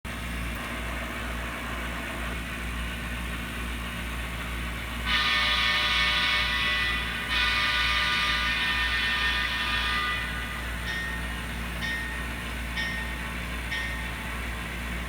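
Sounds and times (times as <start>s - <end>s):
model diesel locomotive engine: 0.1s - 15.0s
locomotive horn blast: 4.7s - 11.8s.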